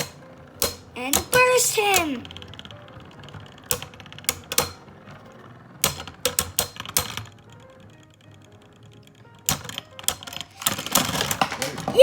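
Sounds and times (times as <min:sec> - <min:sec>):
spinning tops clacking: 0:00.0 - 0:07.6
tops spinning: 0:00.0 - 0:12.0.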